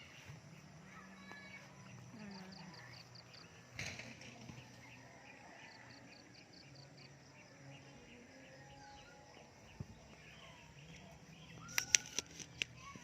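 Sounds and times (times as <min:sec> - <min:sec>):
sharp click: 0:11.6 - 0:12.8.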